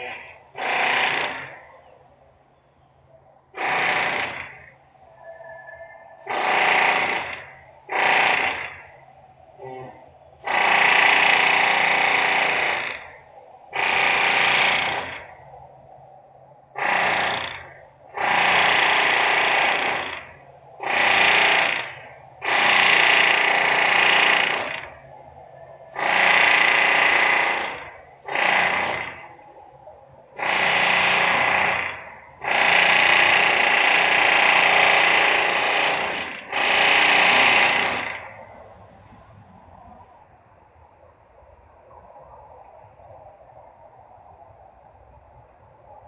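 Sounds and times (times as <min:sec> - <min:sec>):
loud industrial machinery: 0:00.0 - 0:01.6, 0:03.6 - 0:05.4, 0:06.2 - 0:09.0, 0:10.4 - 0:15.4, 0:16.7 - 0:29.5, 0:30.4 - 0:38.6.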